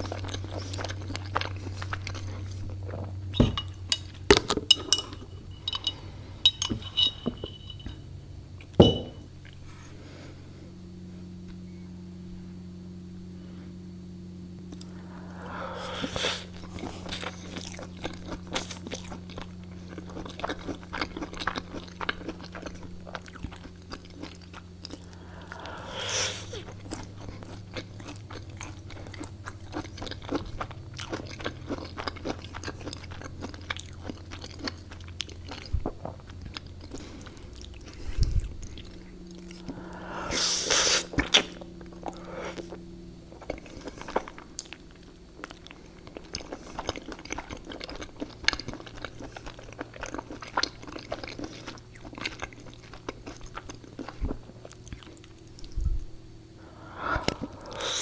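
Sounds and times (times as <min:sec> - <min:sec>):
faint low hum: 0:00.0 - 0:58.0
crunchy bites and chewing: 0:16.0 - 0:55.8.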